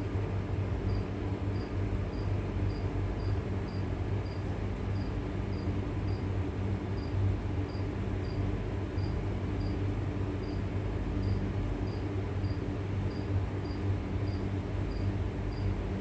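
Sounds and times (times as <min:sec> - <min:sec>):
steady low hum: 0:00.0 - 0:16.0
cricket chirping: 0:00.9 - 0:04.4, 0:05.0 - 0:06.2, 0:07.0 - 0:09.8, 0:10.4 - 0:10.6, 0:11.2 - 0:15.8.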